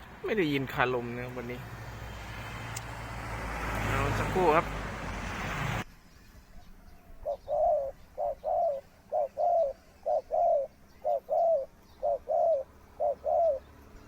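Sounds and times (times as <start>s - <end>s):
dove cooing: 6.8s - 13.8s.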